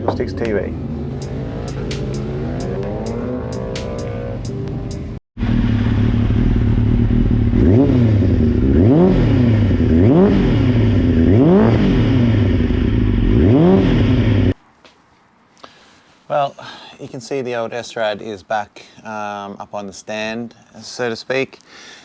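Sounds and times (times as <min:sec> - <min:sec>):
motorcycle engine revving: 0:00.0 - 0:14.6.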